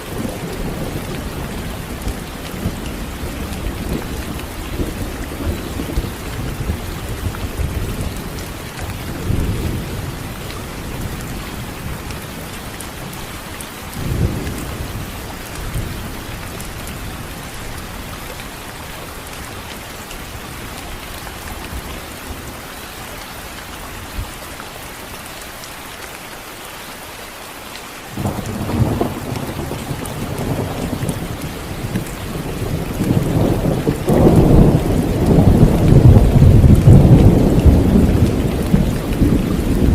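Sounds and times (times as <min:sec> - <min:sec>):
steady rain: 0:00.0 - 0:39.9
rolling thunder: 0:28.2 - 0:39.9
thunderclap: 0:28.2 - 0:39.9.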